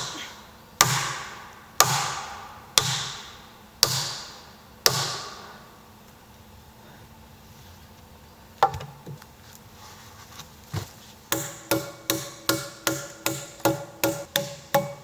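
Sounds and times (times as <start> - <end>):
hammer striking nails into wood: 0.8 - 4.3, 4.9 - 5.5, 11.3 - 15.0.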